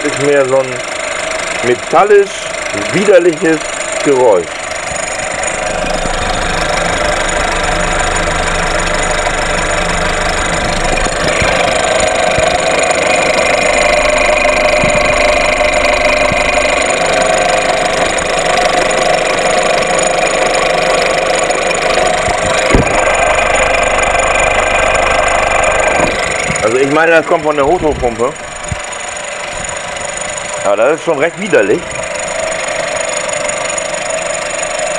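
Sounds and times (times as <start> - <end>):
engine metallic noise: 0.0 - 34.9
short knock: 22.6 - 23.2.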